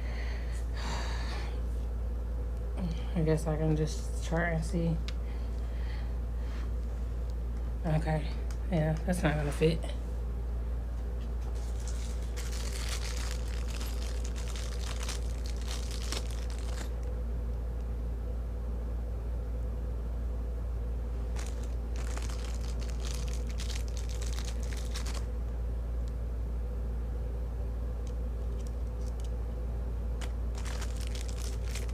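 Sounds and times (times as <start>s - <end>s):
low hum: 0.0s - 31.9s
packaging crinkling: 11.4s - 17.1s, 21.3s - 25.3s, 28.4s - 29.3s, 30.2s - 31.9s.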